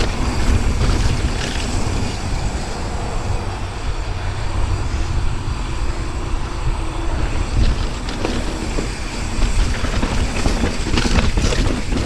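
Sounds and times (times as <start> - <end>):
rattles and knocks: 0.0 - 2.2, 7.5 - 12.0
bike tyres rolling on dirt: 0.0 - 2.7, 6.4 - 12.0
wind buffeting microphone: 0.0 - 12.0.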